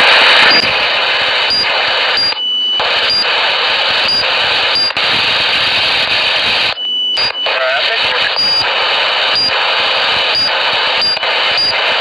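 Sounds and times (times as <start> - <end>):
walkie-talkie radio static: 0.0 - 12.0
steady tone: 0.1 - 11.8
short high beeps: 1.5 - 3.3, 7.0 - 8.7, 10.4 - 11.8.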